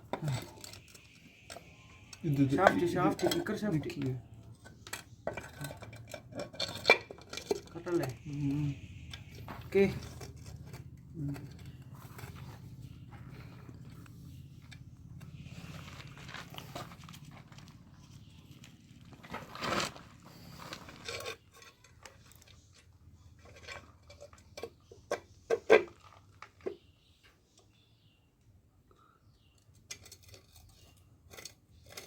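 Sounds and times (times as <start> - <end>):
steady low hum: 6.6 - 19.4.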